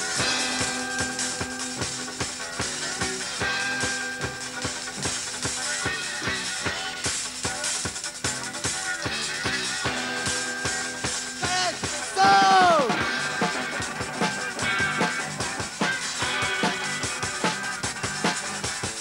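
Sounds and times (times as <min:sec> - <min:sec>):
rock band playing live: 0:00.0 - 0:19.0
steady drum beat: 0:00.0 - 0:19.0.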